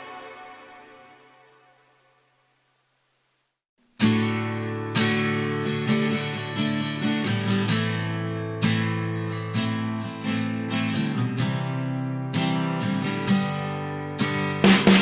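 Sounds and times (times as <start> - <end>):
acoustic guitar strumming: 3.9 - 15.0.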